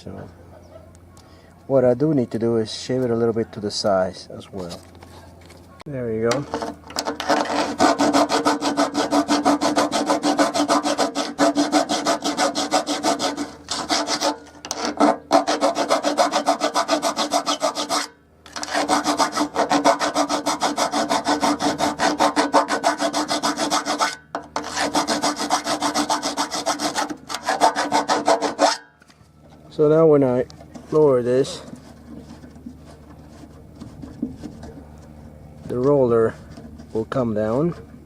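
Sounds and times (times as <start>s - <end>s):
tool grinding metal: 6.3s - 29.0s
low hum: 24.2s - 38.0s.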